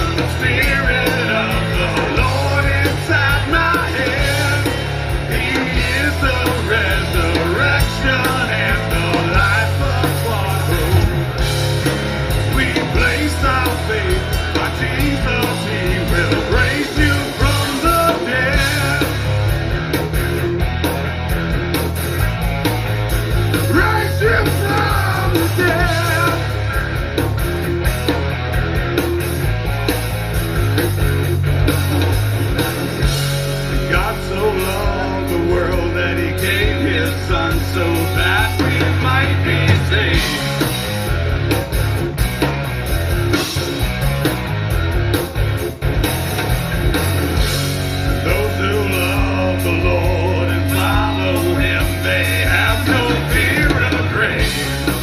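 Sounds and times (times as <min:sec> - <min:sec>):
bass: 0:00.0 - 0:55.0
drums: 0:00.0 - 0:55.0
electric guitar: 0:00.0 - 0:55.0
person singing: 0:23.7 - 0:26.6, 0:48.2 - 0:54.9.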